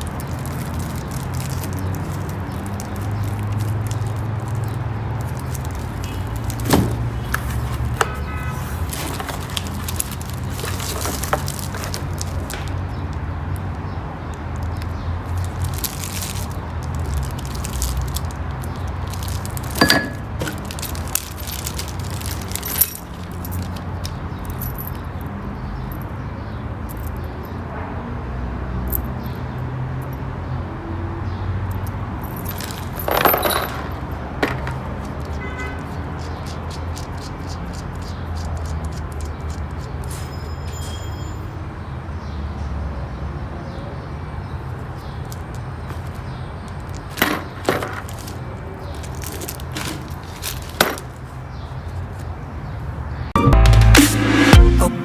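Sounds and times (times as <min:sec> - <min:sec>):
knocks and metallic clinks: 0:14.3 - 0:25.3, 0:31.7 - 0:37.1, 0:45.0 - 0:51.3.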